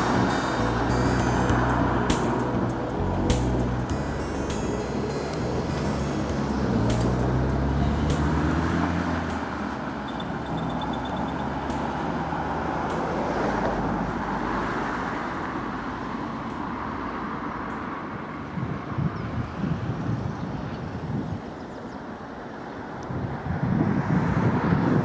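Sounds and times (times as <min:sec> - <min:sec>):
vehicle engine rumbling past: 0:00.0 - 0:18.0
traffic noise: 0:00.0 - 0:25.0.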